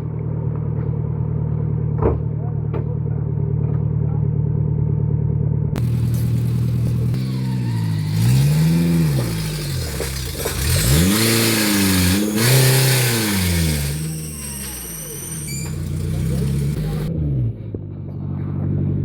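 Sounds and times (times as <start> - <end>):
off-road vehicle engine revving: 5.8 - 19.0.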